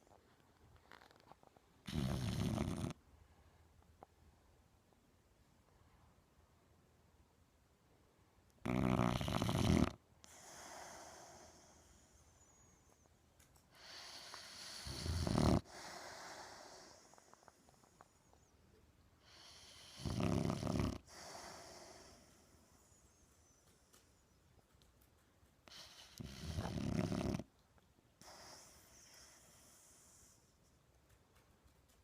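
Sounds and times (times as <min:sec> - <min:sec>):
dog snoring: 0:01.8 - 0:03.0, 0:08.6 - 0:12.7, 0:13.7 - 0:18.4, 0:19.2 - 0:23.2, 0:25.7 - 0:27.5.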